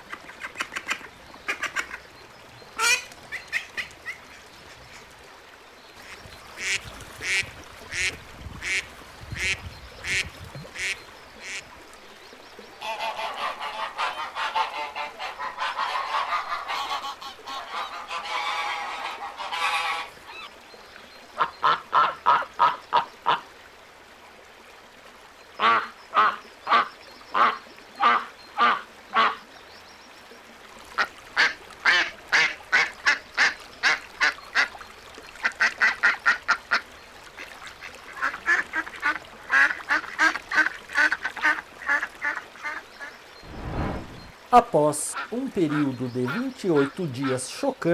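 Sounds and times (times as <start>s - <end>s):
ducks quacking: 0.0s - 2.0s, 2.8s - 5.1s, 6.0s - 11.6s, 12.8s - 20.5s, 21.4s - 23.4s, 25.6s - 29.4s.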